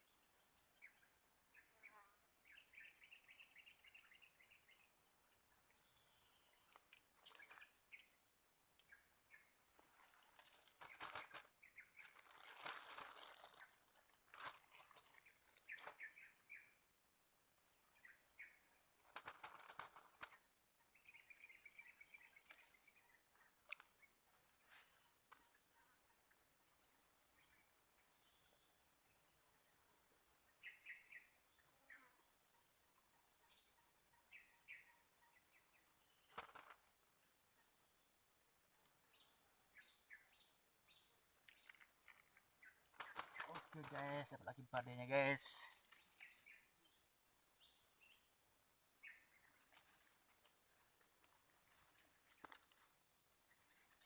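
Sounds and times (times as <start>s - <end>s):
bird chirps: 0.0s - 8.2s, 14.4s - 16.8s, 17.9s - 24.8s, 29.7s - 37.0s, 39.0s - 48.4s, 49.0s - 50.5s.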